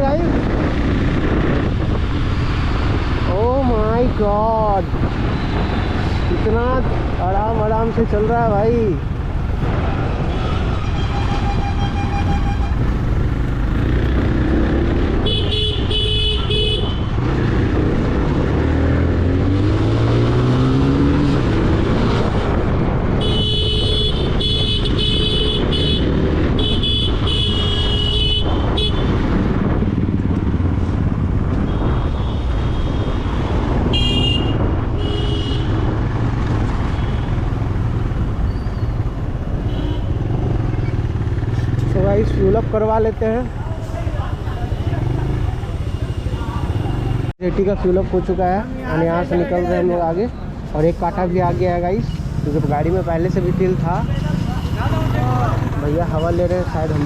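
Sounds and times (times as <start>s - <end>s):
wind: 0.0s - 57.0s
vehicle horns honking: 10.3s - 13.0s, 15.2s - 17.1s, 23.2s - 29.2s, 31.6s - 35.9s, 39.6s - 40.4s, 44.2s - 47.2s, 53.8s - 56.6s.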